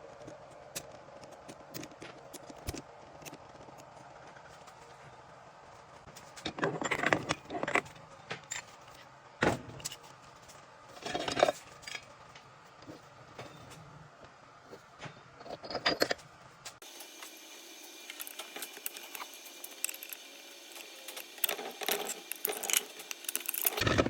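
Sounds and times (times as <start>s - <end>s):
metal parts clinking: 15.4s - 16.2s, 18.1s - 24.0s.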